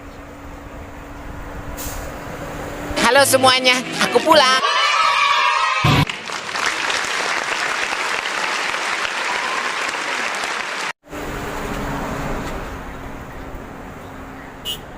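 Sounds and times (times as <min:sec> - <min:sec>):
applause: 0:05.9 - 0:11.0.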